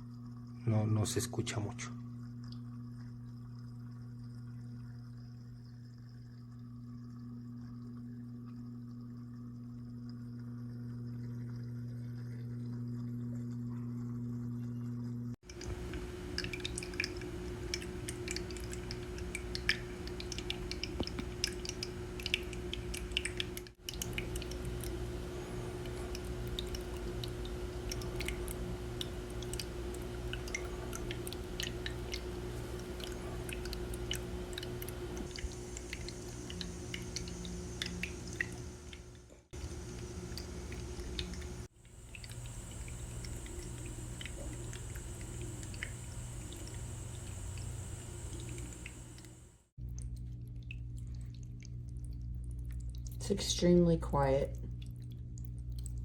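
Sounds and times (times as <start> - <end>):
fountain pump humming: 15.4 - 49.6, 53.2 - 54.6
fountain water trickling: 15.5 - 56.0.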